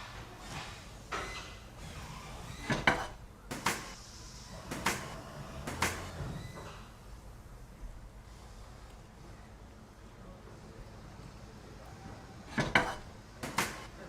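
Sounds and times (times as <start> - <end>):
sharp wooden knocks and clacks: 2.7 - 4.0, 4.7 - 6.1.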